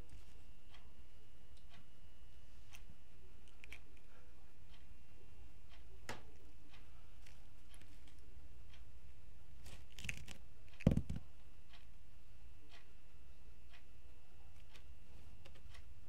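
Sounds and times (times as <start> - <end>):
low room hum: 0.0 - 16.0
knocks: 10.9 - 11.3.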